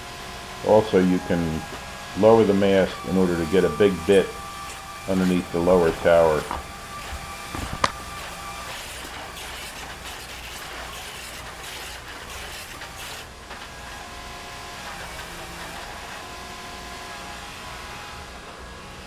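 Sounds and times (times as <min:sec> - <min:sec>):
drill rig engine rumble: 0:00.0 - 0:10.2
hydraulic machinery noise: 0:00.0 - 0:14.0.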